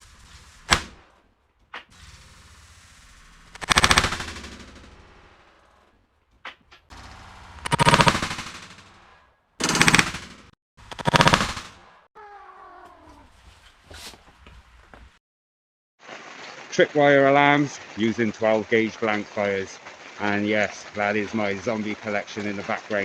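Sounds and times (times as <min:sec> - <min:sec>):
gunshot bang: 0:00.7 - 0:01.0
bursts of rapid gunfire: 0:03.4 - 0:05.9, 0:06.9 - 0:12.0.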